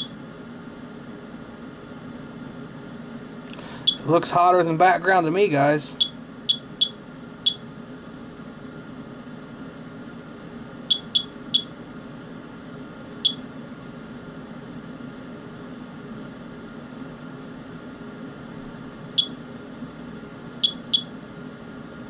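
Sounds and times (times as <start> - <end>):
geiger counter beeps: 3.8 - 4.1, 6.0 - 7.6, 10.9 - 11.7, 13.2 - 13.4, 20.6 - 21.1.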